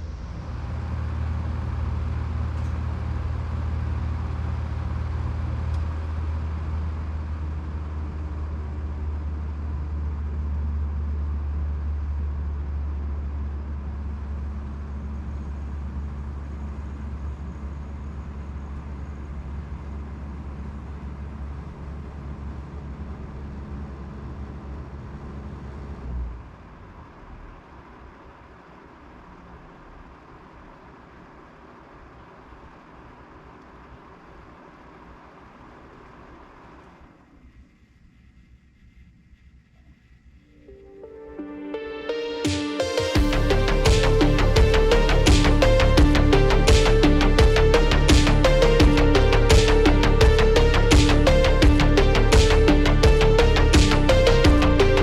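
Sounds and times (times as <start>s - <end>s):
heat pump low hum: 0.0s - 25.0s, 42.5s - 55.0s.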